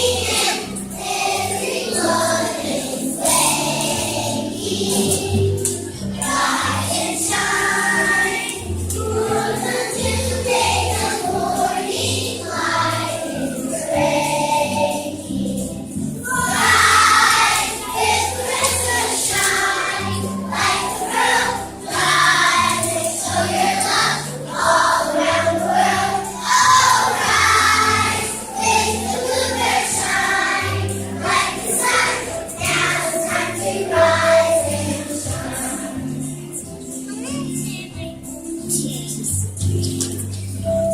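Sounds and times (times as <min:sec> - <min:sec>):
children's choir singing: 0:00.0 - 0:40.9.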